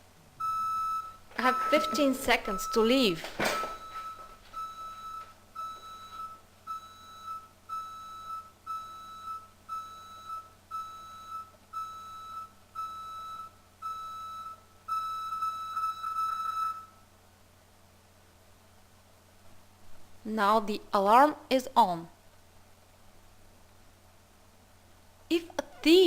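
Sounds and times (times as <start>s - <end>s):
high electronic alarm beeps: 0.4s - 16.9s.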